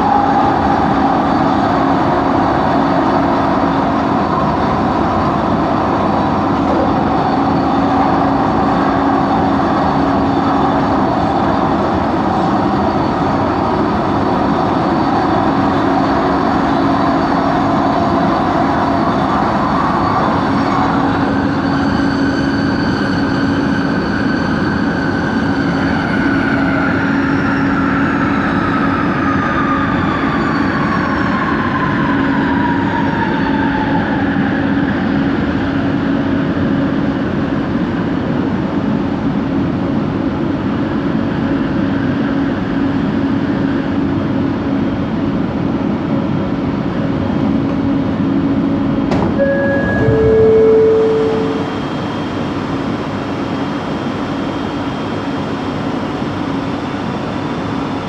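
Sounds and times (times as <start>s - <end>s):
train rolling noise: 0.0s - 58.0s
traction motor whine: 49.1s - 53.0s.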